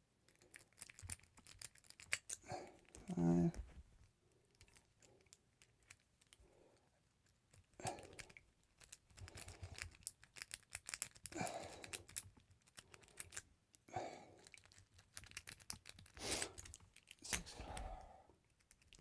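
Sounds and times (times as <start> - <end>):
lock picks clicking and scraping: 0.3 - 3.0, 4.5 - 6.4, 7.2 - 13.8, 14.4 - 17.5, 18.5 - 19.0.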